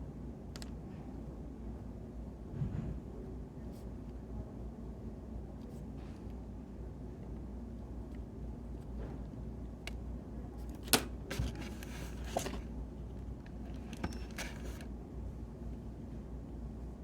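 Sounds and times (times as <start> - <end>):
rustles and clicks of desk handling: 10.6 - 14.9.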